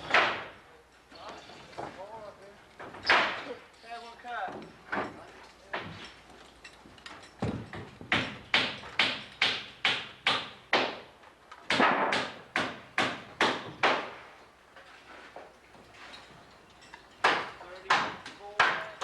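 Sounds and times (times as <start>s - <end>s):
hammer blows ringing: 16.3s - 19.0s.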